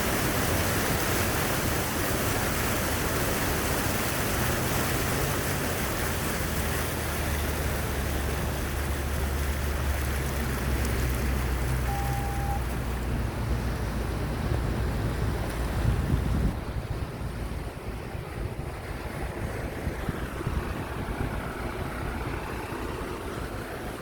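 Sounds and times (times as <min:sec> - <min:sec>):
rainwater rushing in a stream: 0:00.0 - 0:24.0
low steady hum: 0:11.7 - 0:13.5.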